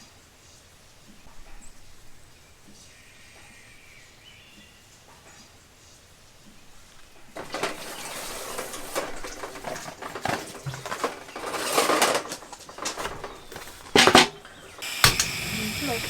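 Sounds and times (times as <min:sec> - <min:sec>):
rustling: 0:06.9 - 0:16.0.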